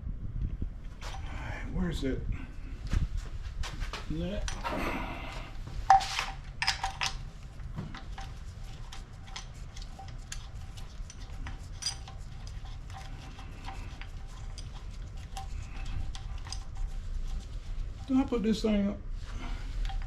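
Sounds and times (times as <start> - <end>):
metal parts and tools clinking: 4.4 - 4.8, 5.9 - 16.8, 19.8 - 20.0.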